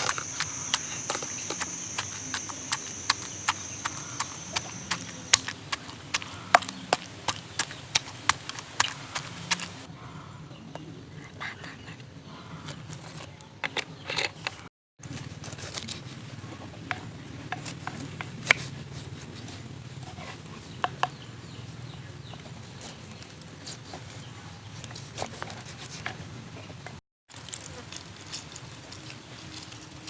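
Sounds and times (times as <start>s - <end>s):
crab shell cracking: 0.0s - 9.8s
low background hum: 0.0s - 9.9s.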